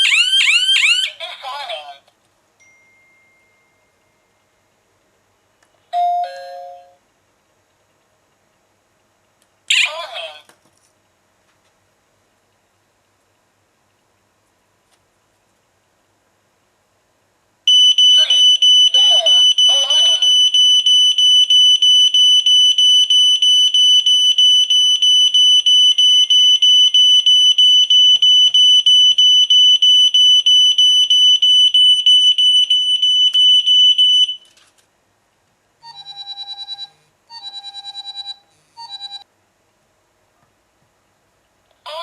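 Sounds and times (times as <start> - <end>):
high pulsing alarm siren: 0.0 - 1.1.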